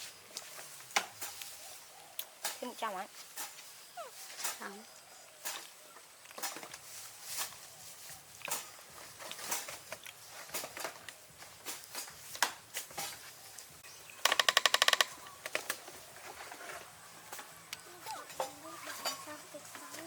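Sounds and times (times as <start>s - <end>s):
rapid rattle of sharp clicks: 14.2s - 15.8s.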